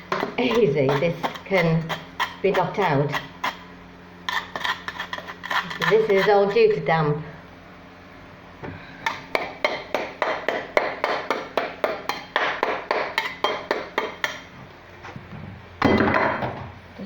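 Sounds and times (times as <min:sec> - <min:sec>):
metal tool chipping plaster: 0:00.0 - 0:03.6, 0:04.3 - 0:06.6, 0:09.4 - 0:14.4.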